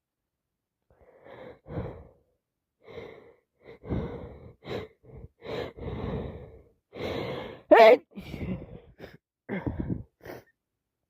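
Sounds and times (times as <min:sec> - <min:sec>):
woman gasping breaths: 0:02.8 - 0:10.5.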